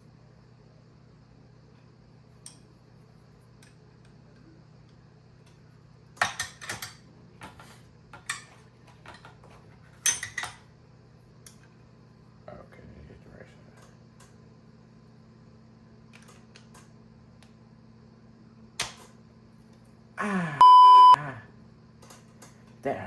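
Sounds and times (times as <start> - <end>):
steady low hum: 10.6 - 23.0.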